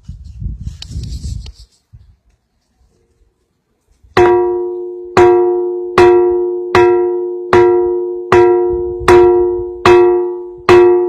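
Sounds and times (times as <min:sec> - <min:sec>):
stone striking ringing rock: 0:04.2 - 0:11.0.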